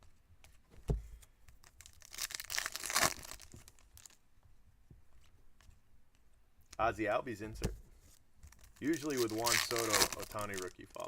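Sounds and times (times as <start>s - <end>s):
foil wrapper crinkling: 1.6s - 4.2s, 8.5s - 11.0s.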